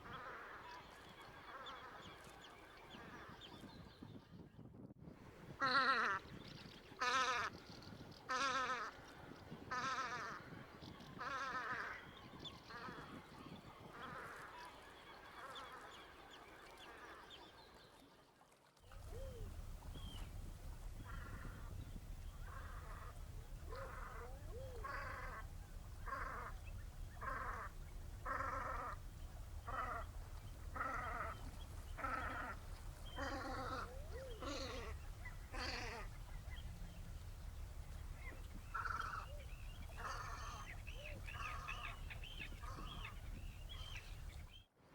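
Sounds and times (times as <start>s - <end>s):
ducks calling harshly: 21.0s - 44.3s.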